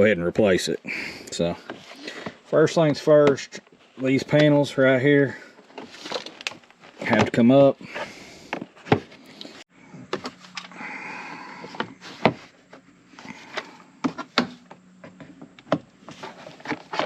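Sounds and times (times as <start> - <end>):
rustling: 5.4 - 9.6.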